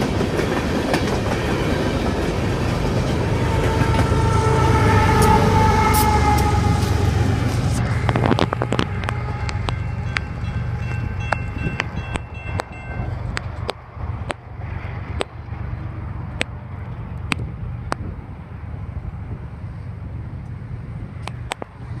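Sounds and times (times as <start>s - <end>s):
train wheel clacks: 0.0s - 14.4s
train wheels rumbling on rail: 0.0s - 22.0s.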